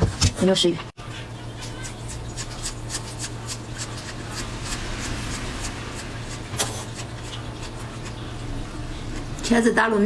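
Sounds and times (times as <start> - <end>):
low steady hum: 1.0 - 10.0.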